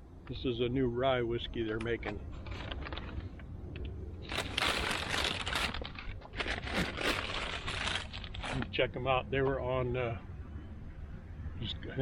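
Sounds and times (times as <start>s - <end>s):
items crinkling and rustling: 1.8s - 3.5s, 4.2s - 8.8s.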